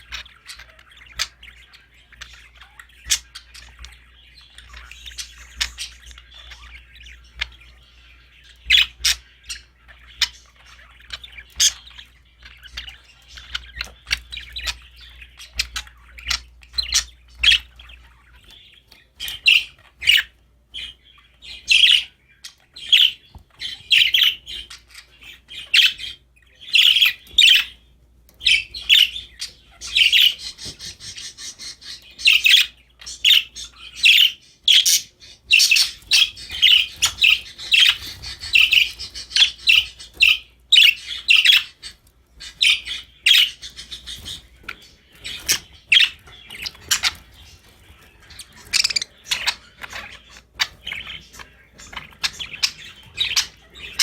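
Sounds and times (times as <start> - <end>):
budgerigars chirping: 0.0 - 54.0
harsh bird squawks: 45.2 - 54.0.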